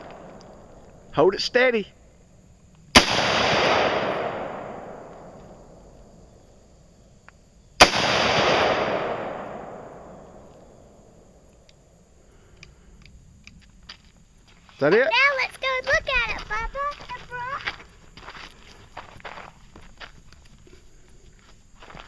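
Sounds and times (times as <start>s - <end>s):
rifle shots with echo: 2.9s - 5.8s, 7.8s - 11.0s.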